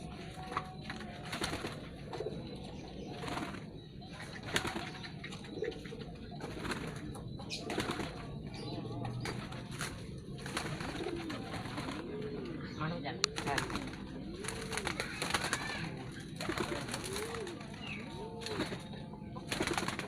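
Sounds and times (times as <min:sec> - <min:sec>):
pigeon wings flapping: 0:00.3 - 0:01.9, 0:04.4 - 0:05.1, 0:06.4 - 0:08.4, 0:09.2 - 0:12.4, 0:13.2 - 0:20.0.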